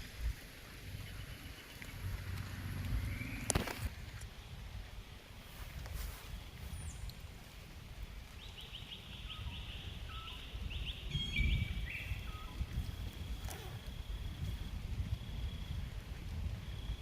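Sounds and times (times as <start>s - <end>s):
bird whistling: 8.9s - 12.6s.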